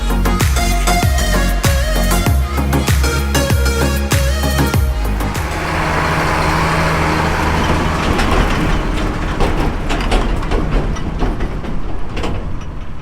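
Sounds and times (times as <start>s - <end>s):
vehicle engine running: 4.8s - 11.3s
road noise: 4.8s - 13.0s
knocks and rattles: 5.1s - 13.0s.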